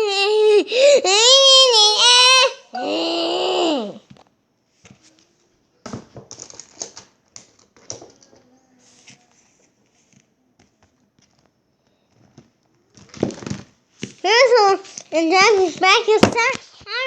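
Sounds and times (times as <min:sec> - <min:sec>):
child imitating dinosaur call: 0:02.8 - 0:04.0
faint taps and rustles: 0:04.1 - 0:17.0.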